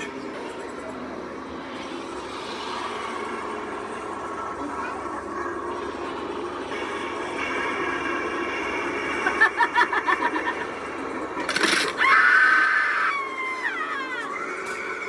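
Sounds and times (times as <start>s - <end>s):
cackling laugh: 9.2s - 10.8s
loud shriek sliding down: 12.0s - 15.0s.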